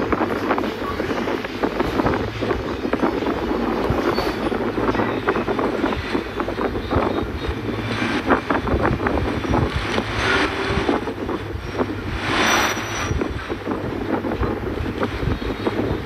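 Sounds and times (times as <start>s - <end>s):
rumbling thumps: 0.0s - 16.0s
steady low hum: 0.0s - 16.0s
wind buffeting microphone: 0.0s - 16.0s.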